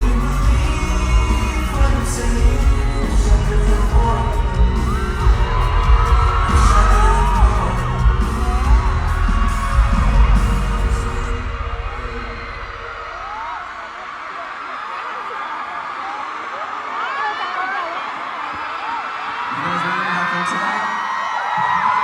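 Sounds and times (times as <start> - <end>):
live pop music with heavy bass: 0.0 - 14.0.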